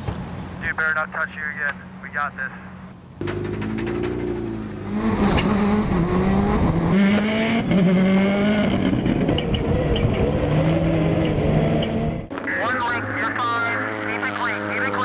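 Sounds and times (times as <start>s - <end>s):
race car engines at high revs: 3.2s - 12.4s, 13.0s - 15.0s.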